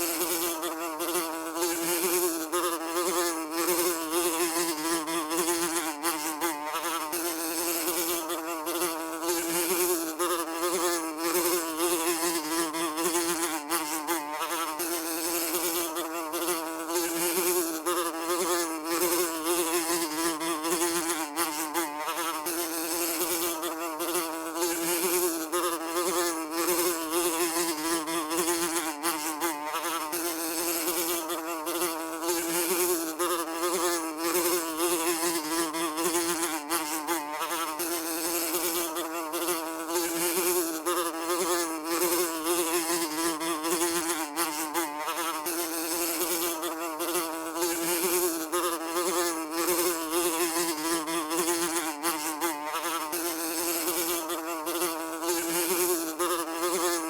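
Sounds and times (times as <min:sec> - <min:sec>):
housefly buzzing: 0:00.0 - 0:57.0.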